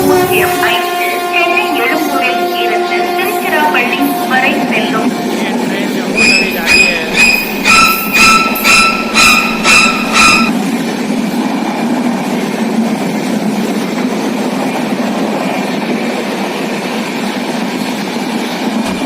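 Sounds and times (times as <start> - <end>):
train wheels rumbling on track: 0.0 - 19.0
short beeps: 6.2 - 10.5.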